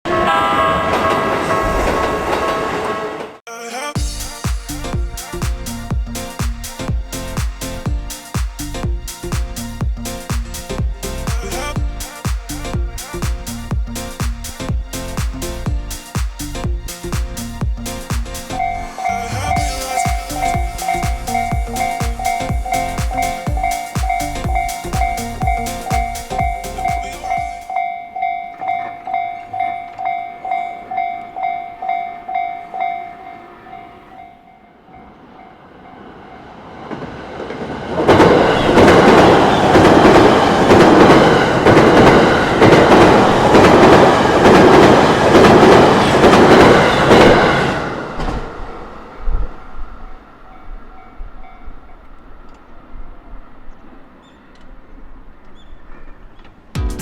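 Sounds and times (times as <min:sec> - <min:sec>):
railway crossing bell ringing: 0:00.1 - 0:03.1, 0:18.5 - 0:36.6, 0:50.0 - 0:52.2
train passing at speed: 0:00.1 - 0:03.4, 0:04.0 - 0:56.7.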